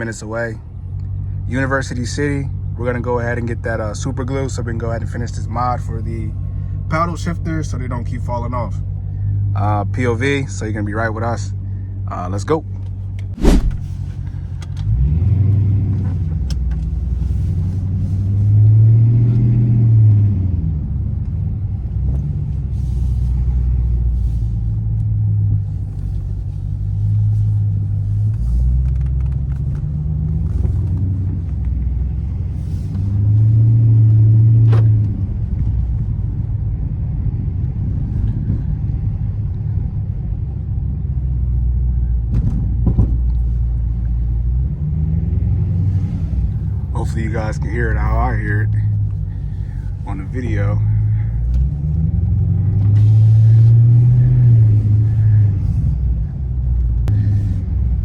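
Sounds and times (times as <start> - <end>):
car engine rumbling: 0.0 - 58.0
sharp click: 13.3 - 14.0.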